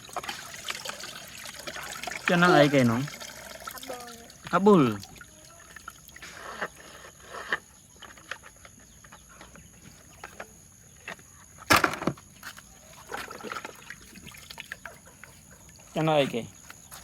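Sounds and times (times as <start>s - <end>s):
small water splashes: 0.0s - 6.3s, 12.9s - 16.0s.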